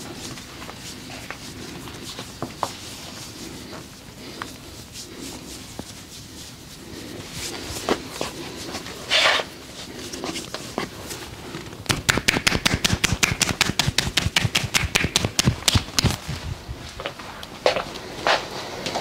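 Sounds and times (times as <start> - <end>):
hands striking a body: 11.9 - 16.2.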